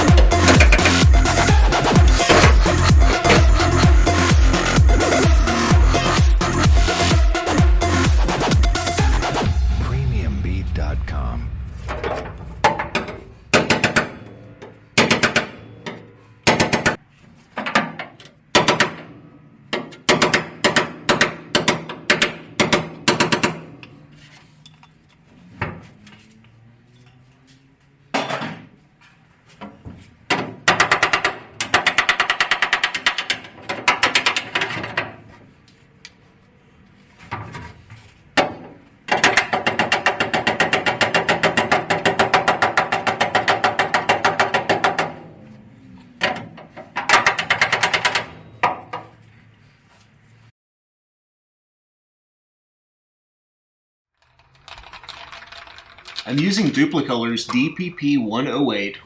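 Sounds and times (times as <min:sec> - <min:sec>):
hammer striking steel: 0:00.0 - 0:01.1, 0:11.6 - 0:17.0, 0:38.4 - 0:45.3.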